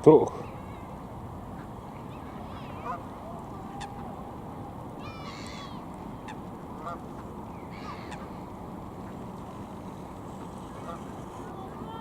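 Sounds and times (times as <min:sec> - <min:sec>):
geese honking: 0:01.6 - 0:03.1, 0:05.0 - 0:08.3.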